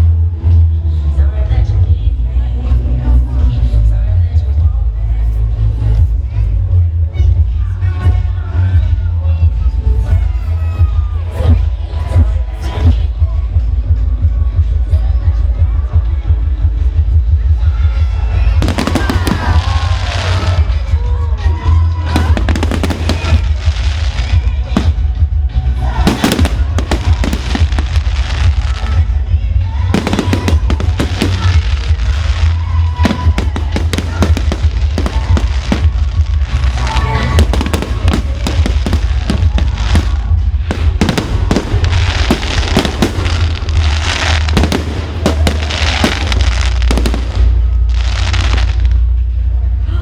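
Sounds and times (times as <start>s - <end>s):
low rumble: 0.0s - 50.0s
music playing: 0.0s - 50.0s
fireworks bangs and crackling: 18.1s - 49.3s.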